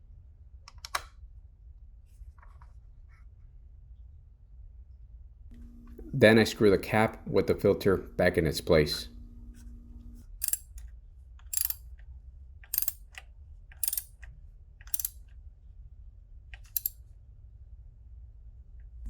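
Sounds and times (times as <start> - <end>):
ratchet wrench clicking: 10.4 - 10.7, 11.5 - 11.8, 12.7 - 13.2, 13.8 - 14.2, 14.9 - 15.2, 16.6 - 17.0.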